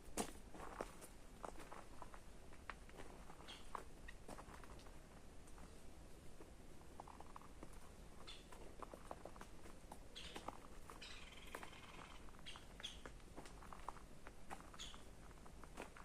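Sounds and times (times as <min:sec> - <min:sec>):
soft clicks and rustles: 0:00.7 - 0:10.9
faint bird chirps: 0:10.2 - 0:13.1, 0:14.7 - 0:15.1
bird warbling call: 0:11.0 - 0:13.0.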